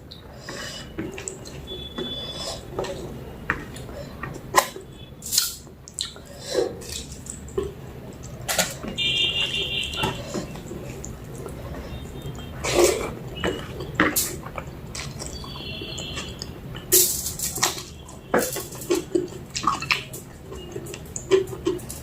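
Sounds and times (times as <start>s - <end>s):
chewing with wet smacks: 0.0s - 16.9s, 17.5s - 22.0s.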